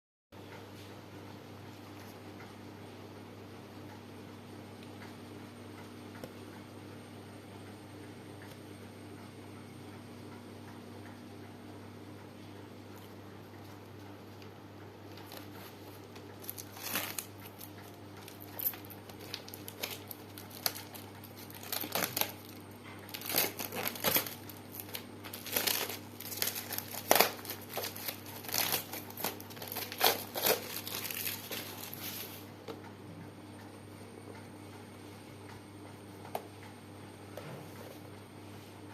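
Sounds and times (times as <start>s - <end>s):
packaging crinkling and rustling: 15.1s - 32.4s
packaging tearing: 16.4s - 32.1s.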